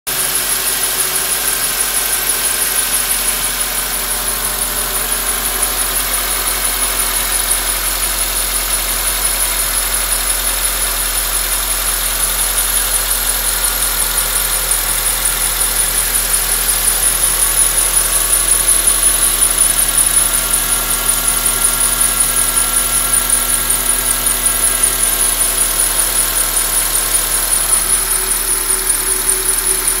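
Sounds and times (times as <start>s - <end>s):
car engine running: 0.1s - 30.0s
high-pitched pulsing squeal: 0.1s - 30.0s.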